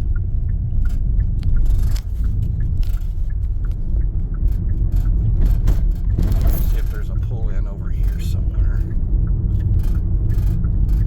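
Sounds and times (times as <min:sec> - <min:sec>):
engine and road rumble: 0:00.0 - 0:11.0
light ticks and clicks: 0:00.0 - 0:11.0.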